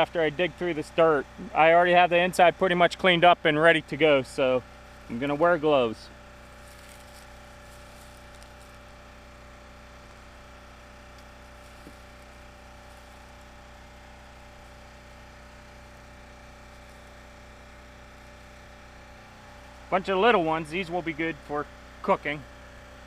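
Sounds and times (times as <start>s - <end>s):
machine hum: 0.0s - 23.0s.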